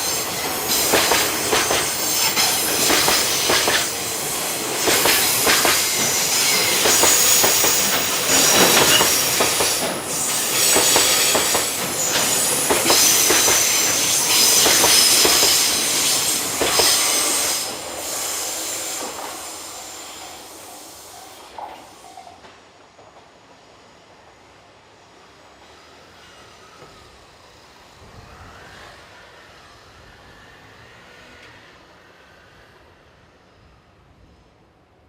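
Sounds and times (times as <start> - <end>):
flange squeal: 0.0 - 21.5.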